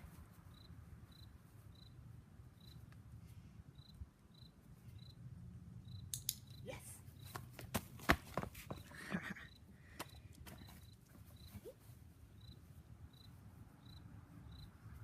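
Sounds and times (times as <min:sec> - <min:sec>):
insect chirping: 0:00.4 - 0:02.9, 0:03.7 - 0:07.4, 0:09.4 - 0:11.7, 0:12.3 - 0:15.0.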